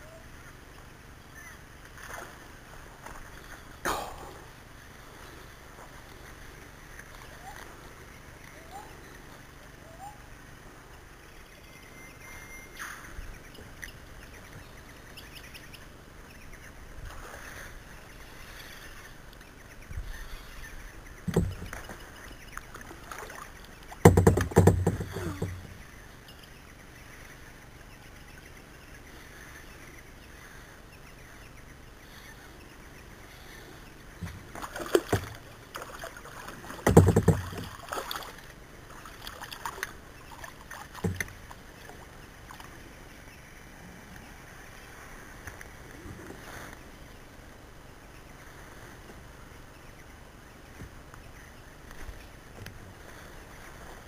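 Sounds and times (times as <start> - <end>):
water splashes: 1.8 - 4.4, 21.2 - 25.8, 34.2 - 42.9
kayak knocks: 21.3 - 22.0, 24.0 - 25.8, 34.2 - 35.5, 36.6 - 38.2, 40.9 - 41.5.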